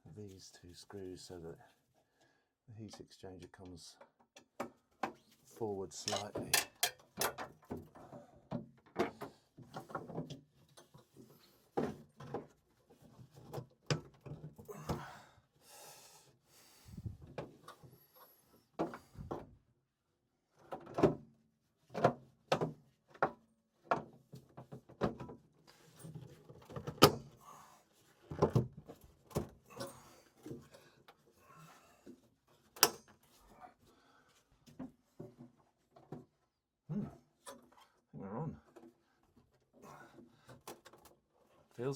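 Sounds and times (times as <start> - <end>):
knocks and clicks on metal boiler parts: 6.1 - 7.5.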